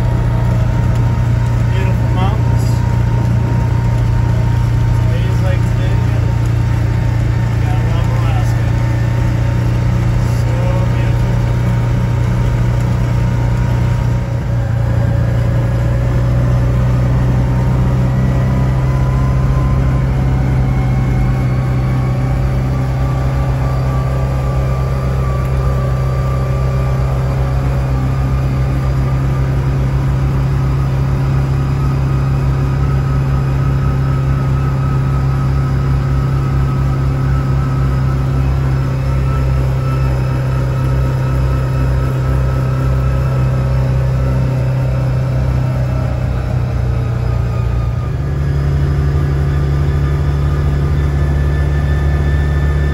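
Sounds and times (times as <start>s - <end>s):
utility vehicle engine driving: 0.0s - 52.9s.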